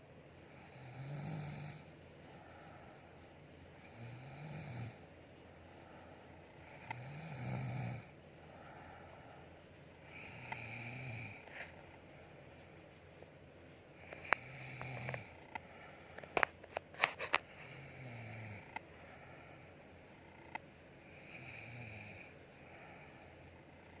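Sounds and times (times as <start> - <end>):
buzzing snores: 0.5 - 3.2, 3.8 - 5.0, 5.8 - 9.2, 10.0 - 11.7, 14.0 - 15.9, 17.1 - 24.0.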